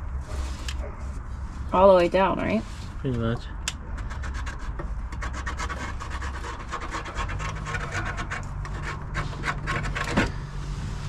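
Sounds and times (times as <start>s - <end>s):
steady low hum: 0.0s - 11.0s
cutting tool scraping sheet metal: 4.0s - 10.4s.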